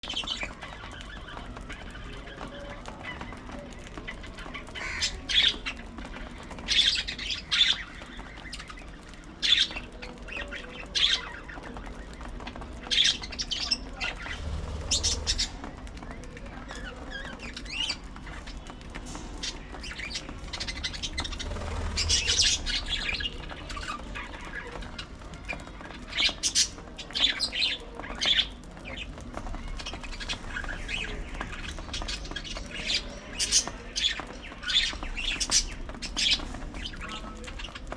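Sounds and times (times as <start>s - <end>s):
budgerigars chirping: 4.7s - 5.8s, 12.2s - 15.6s, 17.0s - 37.8s.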